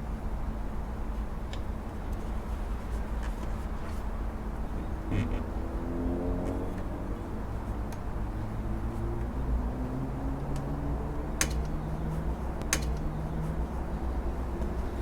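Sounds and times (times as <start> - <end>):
steady low rumble: 0.0 - 15.0
sharp clicks of belt on pulleys: 11.3 - 13.3.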